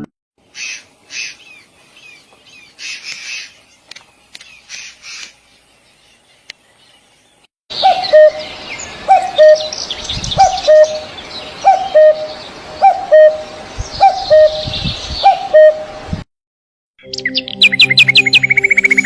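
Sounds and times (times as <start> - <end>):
small birds chirping: 0.4 - 15.7, 17.0 - 19.0
bird two-part call: 2.7 - 3.6, 4.4 - 5.4.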